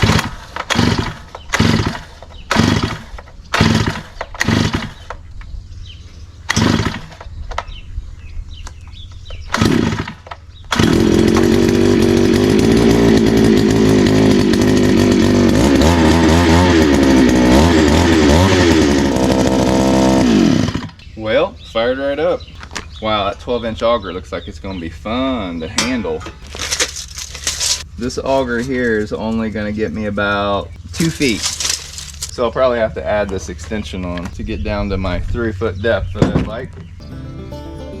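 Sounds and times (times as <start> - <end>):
two-stroke engine running: 0.0 - 5.1, 6.5 - 7.2, 9.5 - 21.1
recoil starter pulls: 0.0 - 5.2, 6.5 - 7.8, 8.9 - 21.1, 25.7 - 27.8, 30.8 - 32.4.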